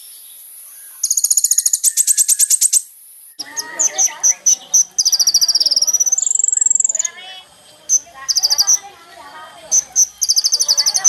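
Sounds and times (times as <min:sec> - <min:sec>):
sunbird chips and trills: 0:00.0 - 0:11.0.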